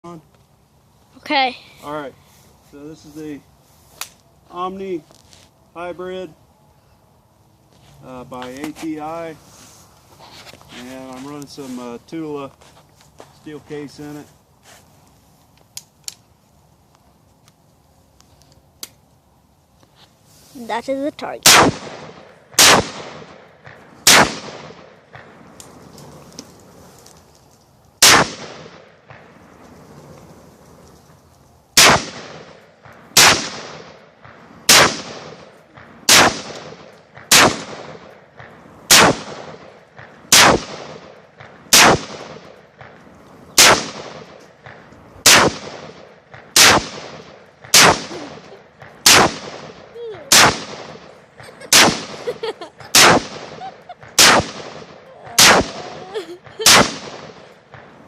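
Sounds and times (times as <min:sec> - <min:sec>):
rifle single shots: 0:21.4 - 0:25.5, 0:28.0 - 0:29.5, 0:31.8 - 0:58.0.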